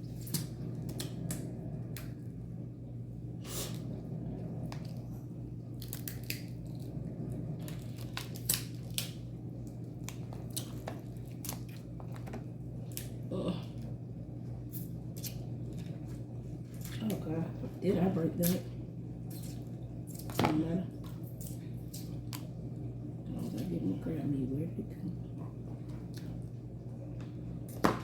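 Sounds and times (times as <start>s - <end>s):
steady low hum: 0.0s - 28.0s
crab shells cracking: 5.8s - 6.8s, 7.7s - 9.2s
chewing and wet smacking: 7.6s - 13.2s, 25.4s - 26.5s.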